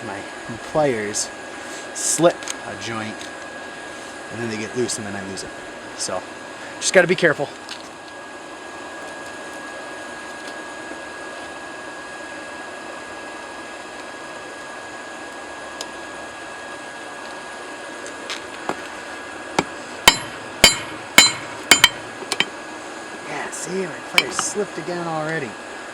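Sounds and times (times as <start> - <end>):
faint constant whine: 0.0 - 25.9
hammer striking hot metal: 19.6 - 22.6, 24.2 - 24.6.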